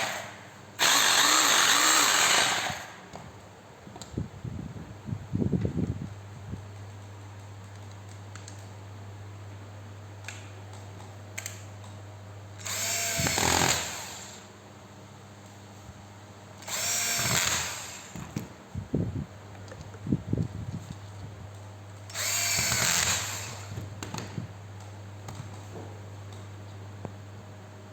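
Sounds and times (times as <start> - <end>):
rotary hammer motor spinning: 0.0 - 3.0, 12.6 - 14.4, 16.7 - 18.1, 22.1 - 23.8.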